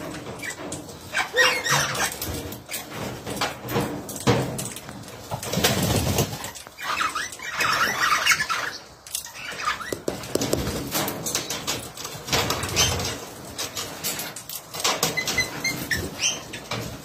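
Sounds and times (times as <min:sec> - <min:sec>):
sharp clicks and taps: 0:09.9 - 0:11.1.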